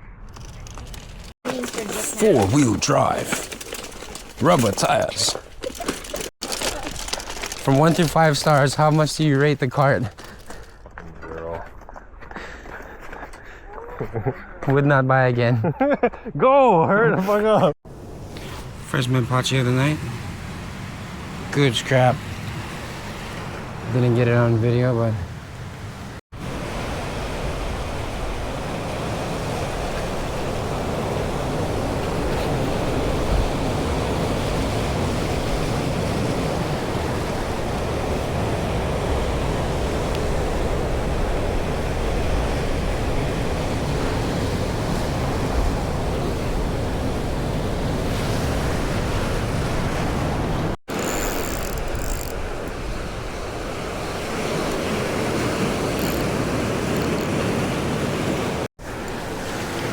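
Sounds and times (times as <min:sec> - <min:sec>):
ocean surf washing ashore: 0:00.9 - 0:05.4, 0:06.0 - 0:10.3, 0:17.4 - 0:59.9
wind buffeting microphone: 0:25.2 - 0:50.8.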